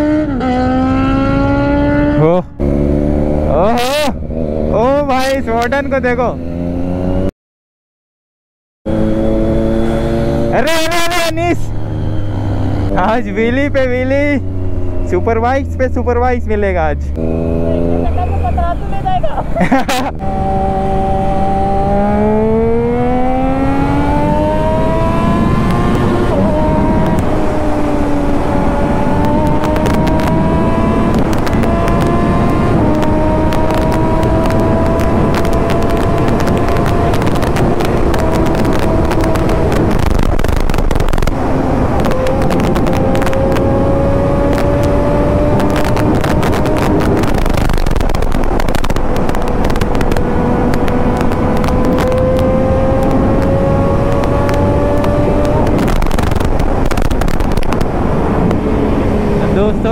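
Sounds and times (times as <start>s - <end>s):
motorcycle engine cruising: 0.0s - 7.3s, 8.9s - 59.9s
wind buffeting microphone: 17.1s - 59.9s.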